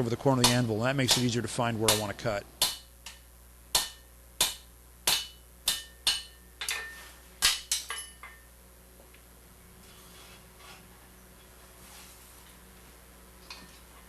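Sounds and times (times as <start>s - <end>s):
hammer striking steel on anvil: 0.4s - 8.5s.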